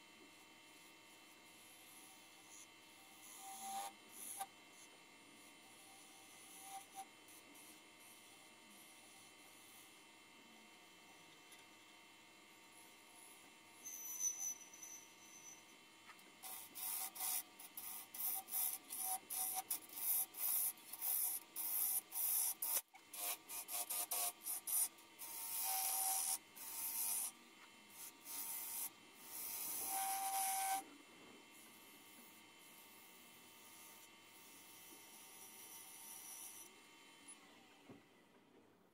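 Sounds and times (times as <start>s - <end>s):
lathe humming: 16.4s - 30.8s
turning gouge scraping wood: 16.4s - 30.8s.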